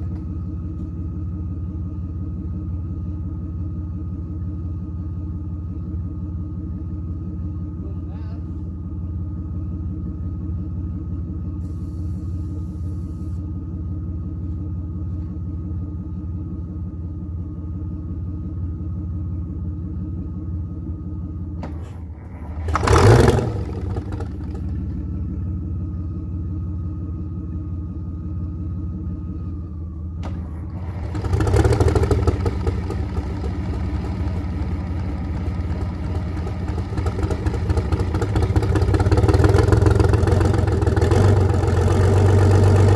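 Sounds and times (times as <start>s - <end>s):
diesel engine running: 0.0s - 42.9s
diesel engine revving: 21.6s - 42.9s.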